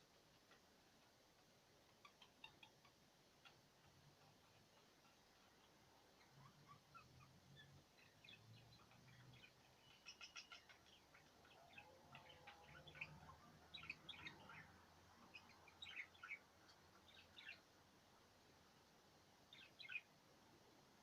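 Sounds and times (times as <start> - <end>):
budgerigars chirping: 2.0 - 17.7, 19.5 - 20.1.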